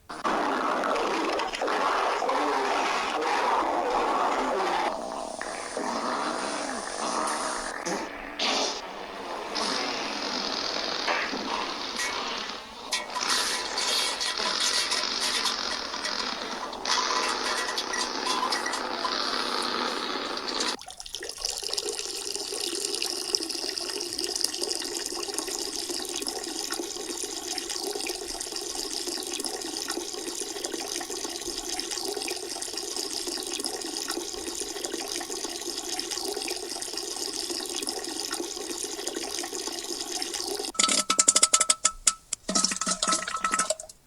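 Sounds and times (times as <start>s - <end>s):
liquid pouring into water: 0.0s - 41.4s, 42.5s - 44.0s
sharp clicks and knocks: 40.8s - 44.0s.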